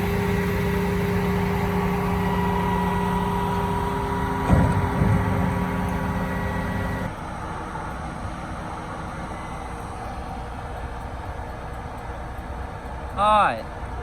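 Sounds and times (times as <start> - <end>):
combine harvester humming: 0.0 - 7.1
low thumps: 0.0 - 7.1.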